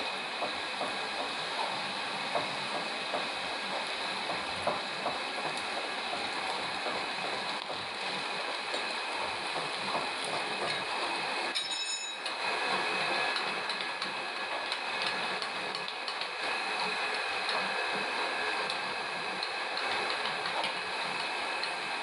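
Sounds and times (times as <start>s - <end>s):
metal lathe running: 0.0s - 22.0s
high-pitched ringing: 11.6s - 12.2s.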